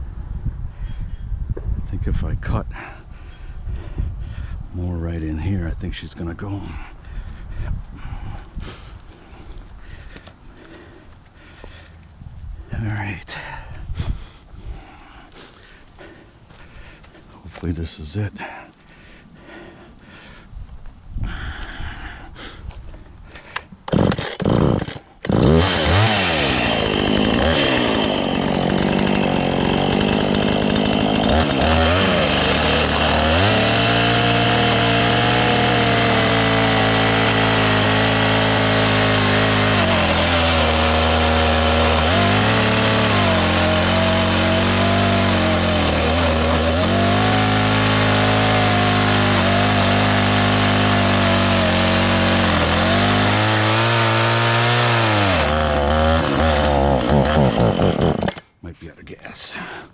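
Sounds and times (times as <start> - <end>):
chainsaw cutting wood: 23.3 - 58.6
chainsaw sputtering and running: 23.4 - 58.5.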